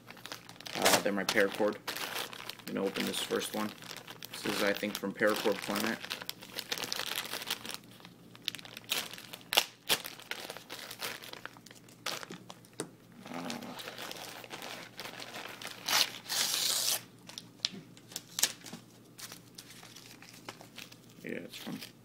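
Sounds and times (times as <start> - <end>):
packaging crinkling and crackling: 0.0 - 22.0
packaging tearing: 0.1 - 12.5, 13.2 - 17.4.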